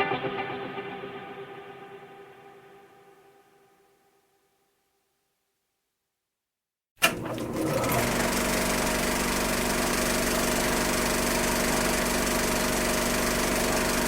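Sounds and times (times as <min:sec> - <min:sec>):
small motor running: 0:07.2 - 0:14.0.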